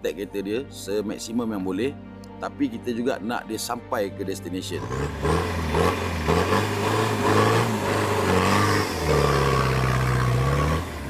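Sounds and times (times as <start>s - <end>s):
engine revving: 4.7s - 11.0s.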